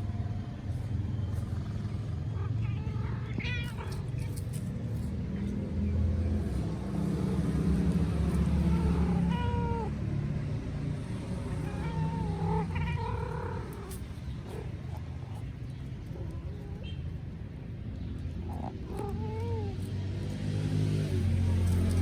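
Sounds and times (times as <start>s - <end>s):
cat meowing: 2.4s - 4.5s, 8.4s - 10.0s, 11.6s - 14.6s, 18.5s - 19.9s.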